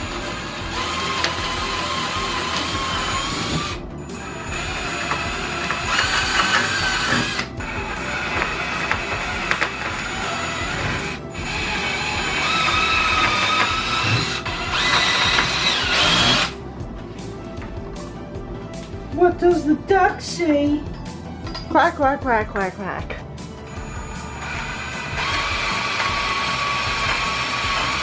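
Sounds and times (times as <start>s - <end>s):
power drill drilling into plywood: 0.0s - 16.5s, 23.7s - 28.0s.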